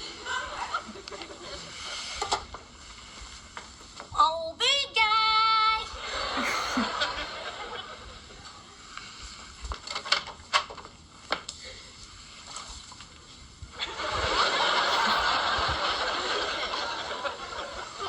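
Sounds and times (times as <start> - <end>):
studio audience laughing: 0.0 - 2.1, 6.0 - 8.4, 13.8 - 18.0
soft clicks and rustles: 8.4 - 13.6.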